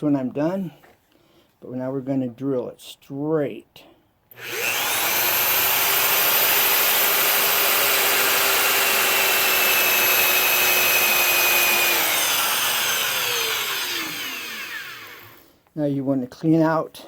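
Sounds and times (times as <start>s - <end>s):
electric drill boring into wood: 4.3s - 15.5s.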